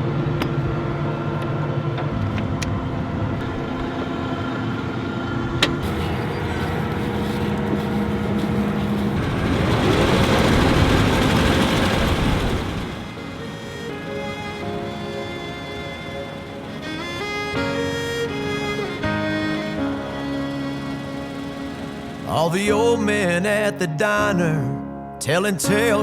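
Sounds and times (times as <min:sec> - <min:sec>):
heavy machinery engine hum: 0:00.0 - 0:24.2
rushing noise: 0:02.8 - 0:23.2.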